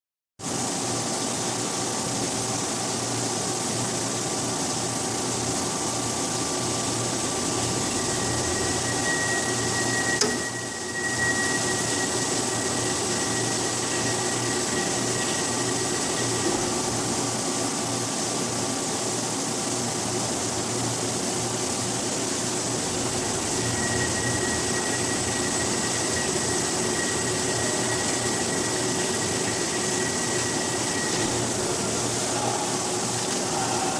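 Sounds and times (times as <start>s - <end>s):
machining centre whirring and whining: 0.5s - 33.9s
higher machine whine: 5.6s - 18.2s, 20.5s - 33.9s.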